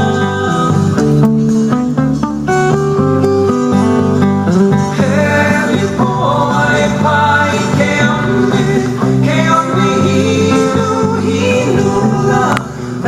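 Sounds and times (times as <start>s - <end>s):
person singing: 0.0s - 1.7s, 4.7s - 13.0s
plucked guitar: 0.0s - 13.0s.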